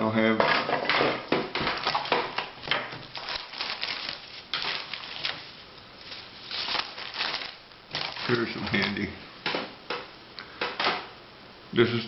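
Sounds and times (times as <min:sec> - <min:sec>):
tools clattering on a workbench: 0:00.3 - 0:02.9.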